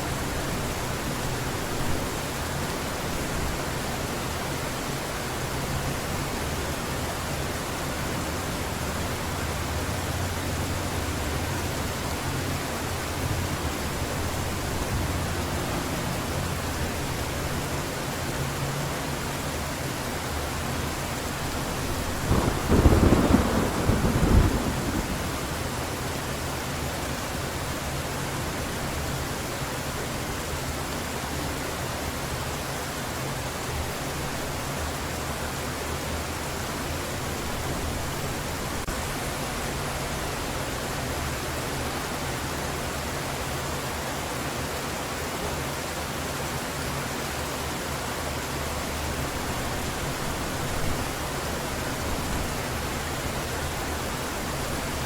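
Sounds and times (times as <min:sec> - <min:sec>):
heavy rain falling: 0:00.0 - 0:55.0
loud thunder rumble: 0:22.2 - 0:25.6.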